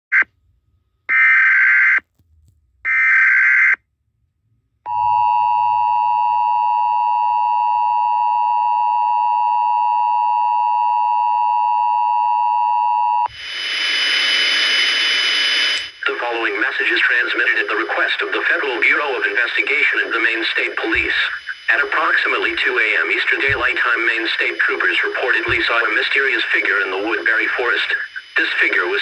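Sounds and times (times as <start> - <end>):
loud static hiss: 13.3 - 29.0.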